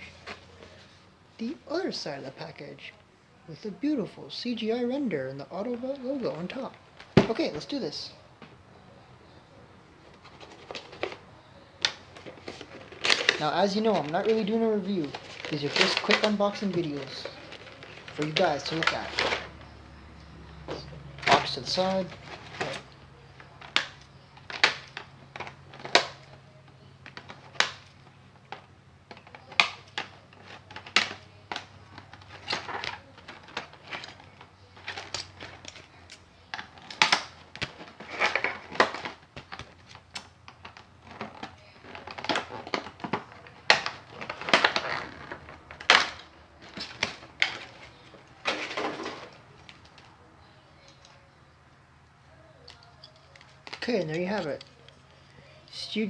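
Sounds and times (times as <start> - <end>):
packaging rustling: 10.0 - 19.7, 20.5 - 50.9
plastic crinkling: 11.8 - 19.7.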